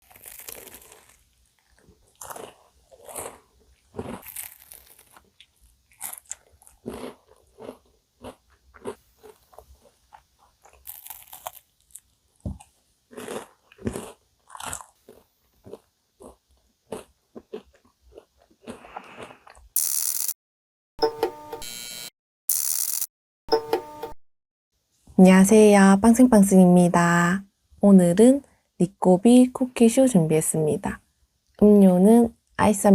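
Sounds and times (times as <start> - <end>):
crisp bites into cookie crust: 0.0 - 18.8
chewing: 0.0 - 19.8.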